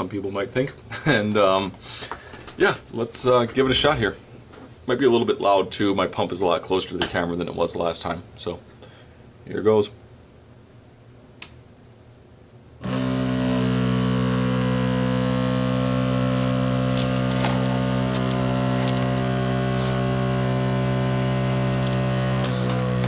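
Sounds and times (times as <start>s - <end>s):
vacuum pump humming: 12.8s - 23.0s.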